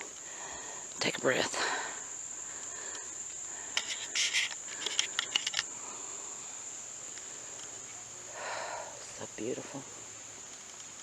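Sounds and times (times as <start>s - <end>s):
soft rush of breath: 0.0s - 7.6s, 8.3s - 9.0s
insects trilling: 0.0s - 11.0s.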